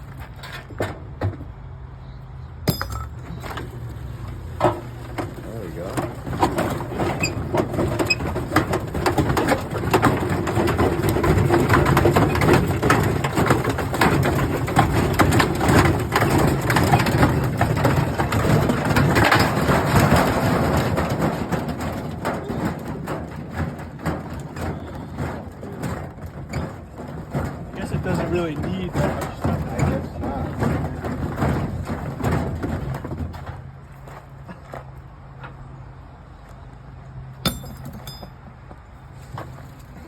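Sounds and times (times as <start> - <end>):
hard objects clattering in drum: 4.4 - 33.7.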